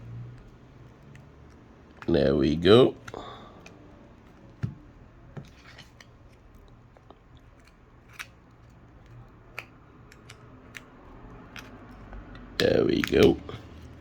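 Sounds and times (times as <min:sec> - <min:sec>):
pry tool clicking and scraping: 0:07.6 - 0:13.6.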